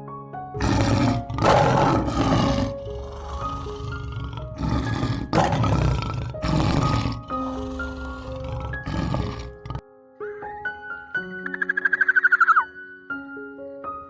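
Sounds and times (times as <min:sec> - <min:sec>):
soft piano background music: 0:00.0 - 0:14.0
rough animal calls: 0:00.6 - 0:09.8, 0:11.5 - 0:12.7.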